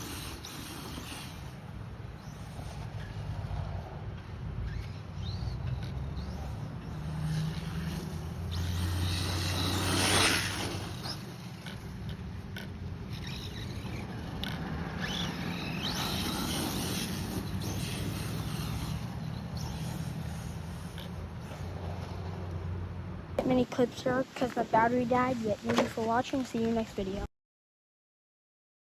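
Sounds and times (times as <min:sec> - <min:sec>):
electric rc car motor whining: 0:00.0 - 0:22.8.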